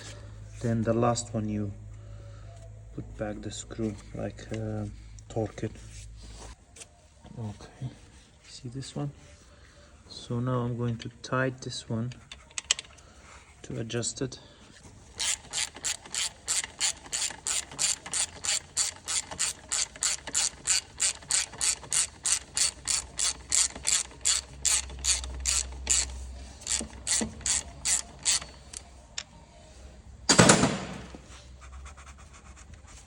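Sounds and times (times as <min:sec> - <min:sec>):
hand ratchet clicking: 0:15.1 - 0:28.8.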